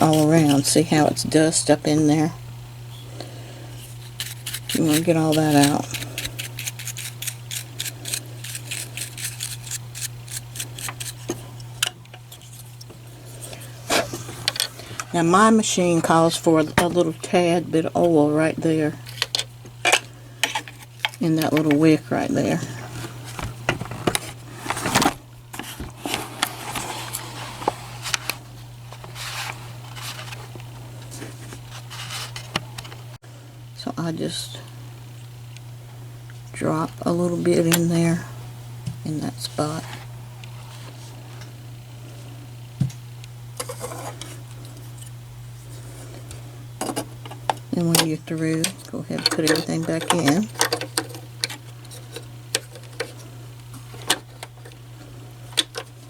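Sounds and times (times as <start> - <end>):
small brush scrubbing: 0.0 - 1.1, 3.8 - 11.5
steady low hum: 0.0 - 56.0.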